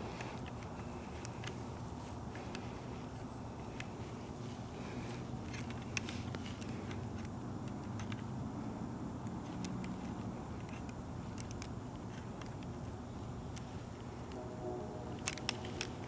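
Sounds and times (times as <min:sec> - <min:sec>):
steady low hum: 0:00.0 - 0:16.0
light clicks and taps: 0:09.2 - 0:12.9.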